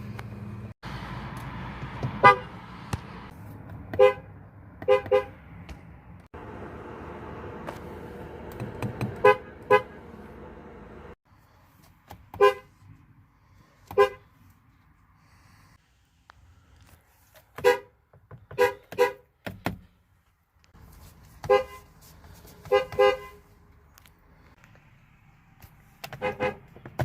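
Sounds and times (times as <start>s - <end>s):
car horn honks: 2.2s - 2.5s, 4.0s - 5.4s, 8.9s - 10.8s, 12.4s - 12.7s, 21.4s - 21.9s, 22.7s - 23.5s, 26.2s - 26.6s.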